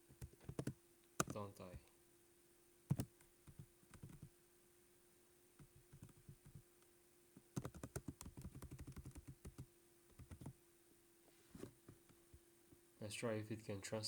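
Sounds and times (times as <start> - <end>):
keyboard key clicks: 2.9 - 4.2.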